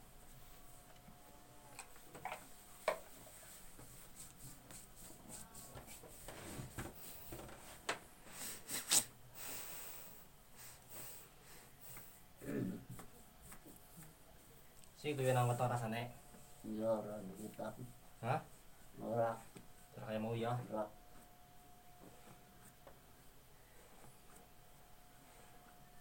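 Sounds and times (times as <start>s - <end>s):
hands rubbing and rustling: 2.5s - 8.0s, 12.9s - 17.9s.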